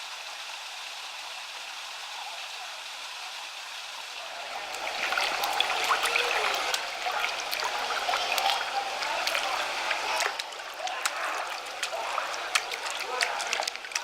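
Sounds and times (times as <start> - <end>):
water trickling and splashing: 3.8 - 14.0.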